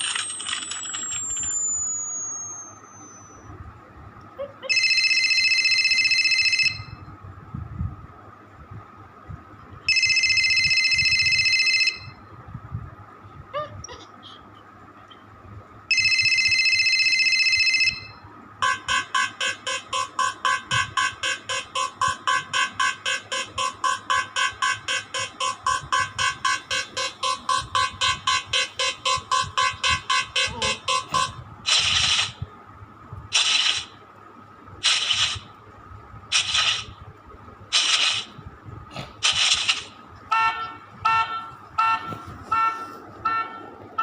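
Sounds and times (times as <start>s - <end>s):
electronic alarm beeps: 0.0s - 3.6s, 15.9s - 31.4s.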